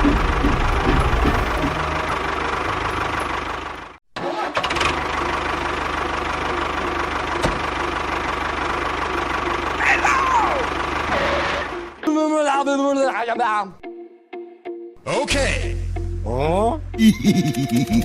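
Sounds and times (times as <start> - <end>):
small engine humming: 4.8 - 12.0.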